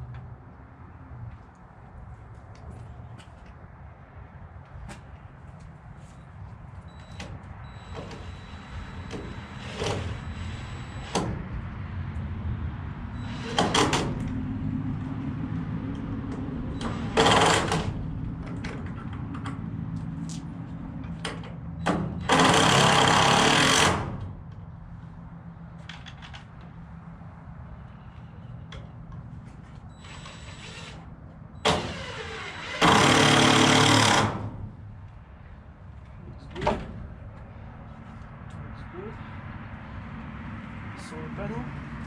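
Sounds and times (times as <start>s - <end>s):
power drill driving screws: 16.8s - 17.9s, 22.2s - 24.0s, 30.0s - 34.5s.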